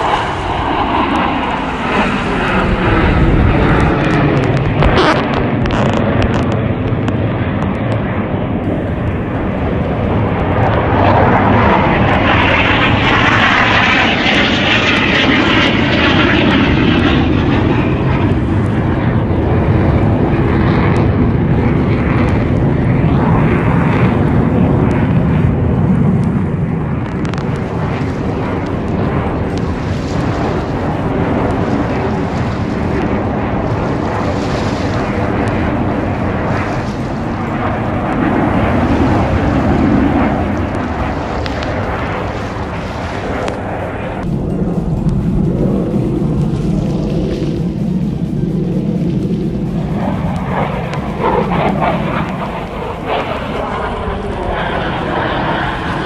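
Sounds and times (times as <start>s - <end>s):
aircraft flying past: 0.0s - 56.0s
falling low tone: 39.0s - 53.5s.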